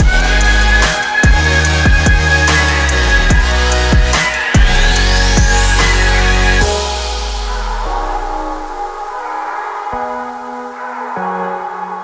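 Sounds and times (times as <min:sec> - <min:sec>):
deep bass note: 0:00.0 - 0:08.9
sustained synth chord: 0:00.0 - 0:11.5.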